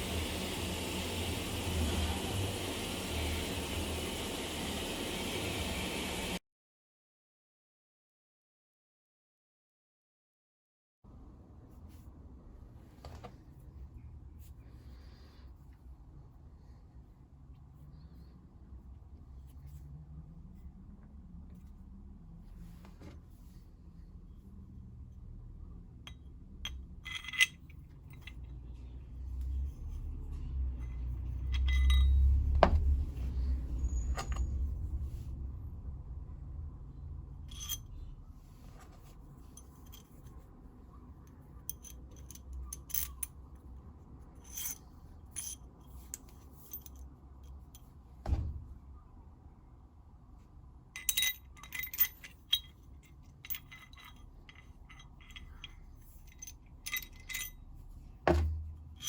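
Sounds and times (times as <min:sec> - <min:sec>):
metal tools clinking and scraping: 0:26.6 - 0:28.5, 0:29.5 - 0:32.5, 0:37.4 - 0:40.4, 0:41.3 - 0:43.4, 0:44.4 - 0:47.9, 0:51.0 - 0:59.0
low rumble: 0:29.4 - 0:38.6.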